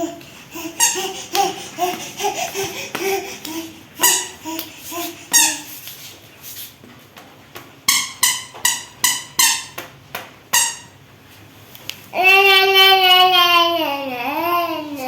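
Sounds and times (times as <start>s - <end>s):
baby squealing: 0.0s - 5.7s.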